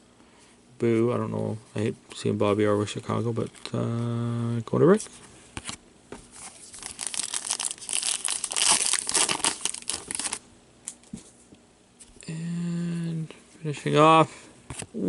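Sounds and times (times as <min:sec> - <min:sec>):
plastic packaging crinkling and tearing: 0:06.4 - 0:10.4.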